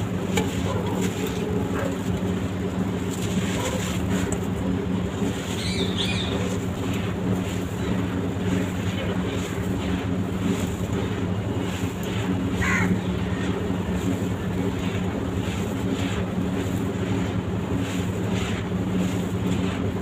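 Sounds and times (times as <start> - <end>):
bird-like chirp: 5.5 - 6.5.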